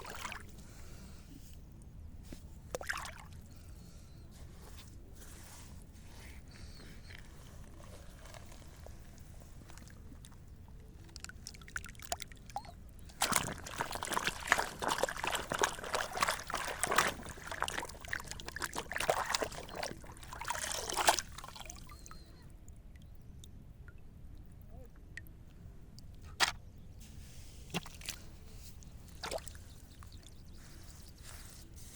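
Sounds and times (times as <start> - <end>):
water sloshing and splashing: 0.0 - 0.6, 2.7 - 3.4, 7.0 - 22.2, 27.3 - 30.8.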